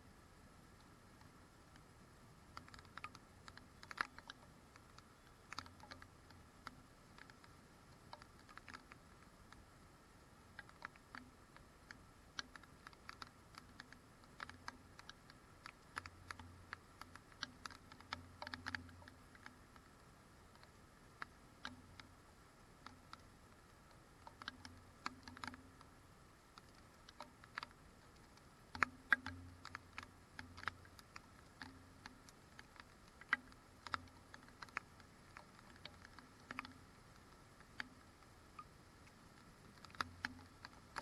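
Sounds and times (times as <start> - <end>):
low background hum: 0.0 - 41.0
light taps and clicks: 2.5 - 9.7, 10.5 - 22.2, 22.8 - 41.0.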